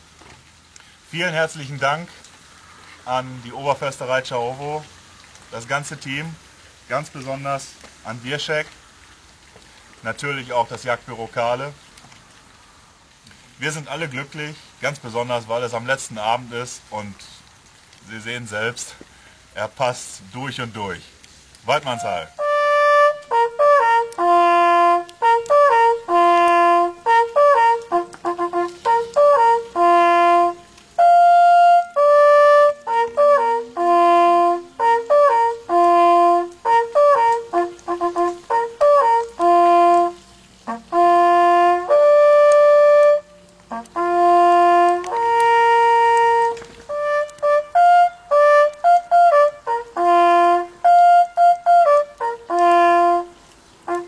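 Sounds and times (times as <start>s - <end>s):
hunting horn call: 21.7s - 54.0s.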